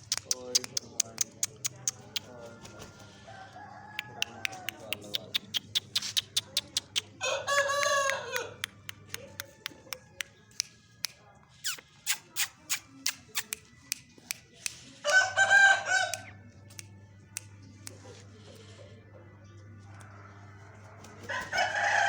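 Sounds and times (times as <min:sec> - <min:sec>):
sharp irregular clicks: 0:00.0 - 0:02.3
rooster crowing: 0:02.6 - 0:04.8, 0:07.2 - 0:08.6, 0:15.0 - 0:16.2, 0:20.0 - 0:22.0.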